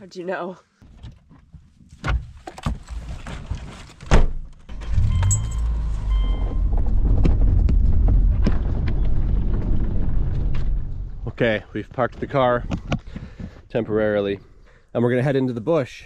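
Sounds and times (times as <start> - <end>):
car doors shutting: 4.1 - 6.8
car engine rumble: 4.6 - 11.6
electronic chime tones: 5.0 - 6.7.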